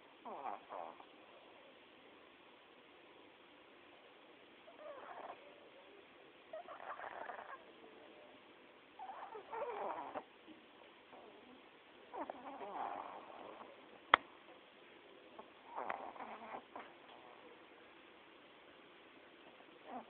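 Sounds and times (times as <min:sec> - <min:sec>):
dog snoring: 0:00.2 - 0:01.1, 0:04.7 - 0:05.5, 0:06.5 - 0:07.6, 0:09.0 - 0:10.3, 0:11.1 - 0:13.8, 0:15.6 - 0:17.4.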